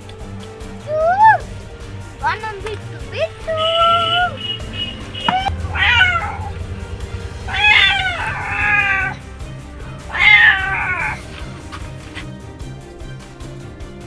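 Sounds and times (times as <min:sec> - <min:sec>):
background music: 0:00.0 - 0:14.0
cat meowing: 0:00.9 - 0:01.4, 0:03.4 - 0:12.3.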